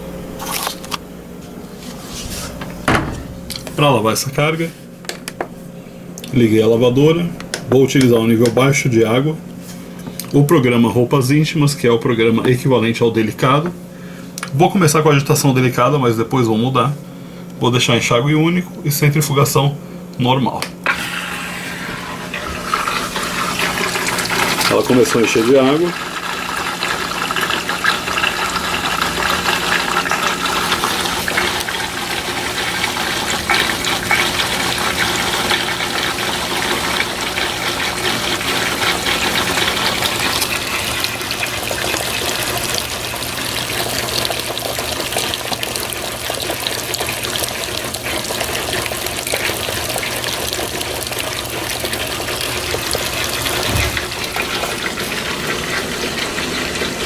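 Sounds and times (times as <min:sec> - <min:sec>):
low hum: 0:01.5 - 0:05.0
water pouring into washing machine: 0:20.9 - 0:57.0.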